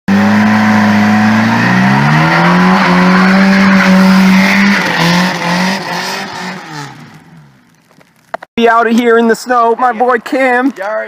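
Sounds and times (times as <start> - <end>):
car engine revving: 0.1 - 7.6.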